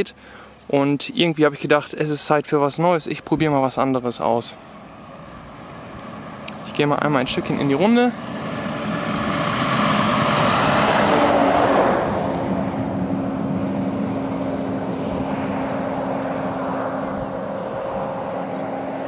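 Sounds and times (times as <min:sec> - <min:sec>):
low engine hum: 0:04.5 - 0:19.0
car passing by: 0:04.7 - 0:19.0.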